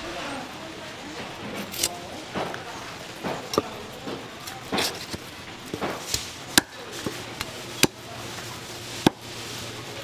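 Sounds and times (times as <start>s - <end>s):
cleaver chopping on cutting board: 9.0s - 9.2s.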